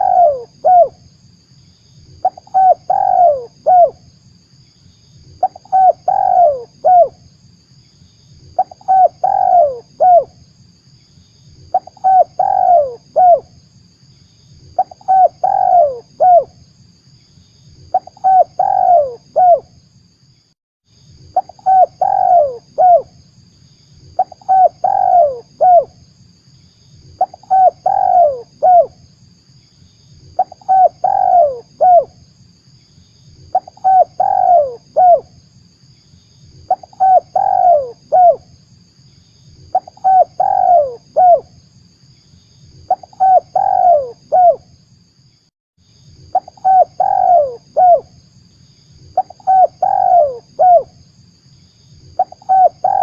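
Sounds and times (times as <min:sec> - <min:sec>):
dove cooing: 0:00.0 - 0:01.0, 0:02.2 - 0:04.0, 0:05.4 - 0:07.2, 0:08.6 - 0:10.4, 0:11.7 - 0:13.5, 0:14.8 - 0:16.5, 0:17.9 - 0:19.7, 0:21.4 - 0:23.1, 0:24.2 - 0:26.0, 0:27.2 - 0:29.0, 0:30.4 - 0:32.1, 0:33.5 - 0:35.3, 0:36.7 - 0:38.4, 0:39.7 - 0:41.5, 0:42.9 - 0:44.6, 0:46.3 - 0:48.1, 0:49.2 - 0:50.9, 0:52.2 - 0:53.0.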